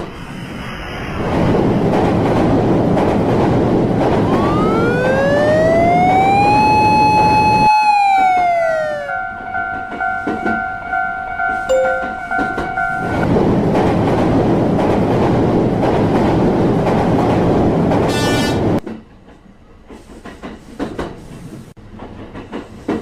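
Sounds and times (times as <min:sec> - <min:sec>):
train running noise: 0:00.0 - 0:07.5, 0:08.3 - 0:23.0
level-crossing alarm dinging: 0:04.3 - 0:13.3
train horn blast: 0:18.1 - 0:18.7.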